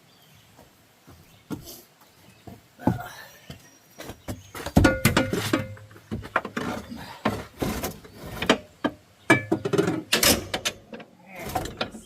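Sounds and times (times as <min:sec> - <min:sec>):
metal clanks and knocks: 0:04.6 - 0:12.0.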